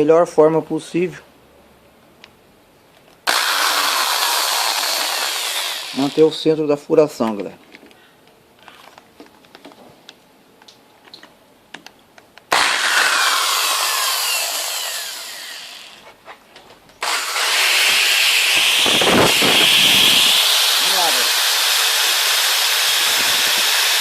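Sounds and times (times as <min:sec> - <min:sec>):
electric drill drilling metal: 0:03.3 - 0:06.4, 0:12.5 - 0:16.0, 0:17.0 - 0:24.0.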